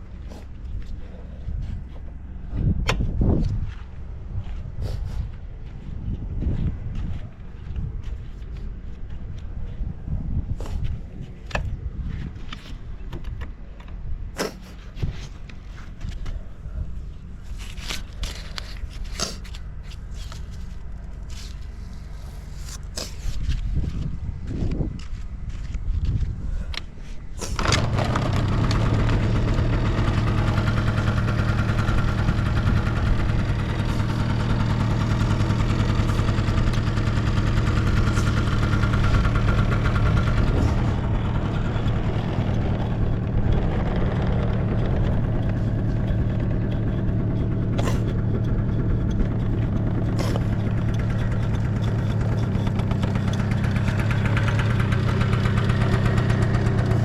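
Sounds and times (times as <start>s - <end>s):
scooter engine starting and idling: 27.4s - 57.0s.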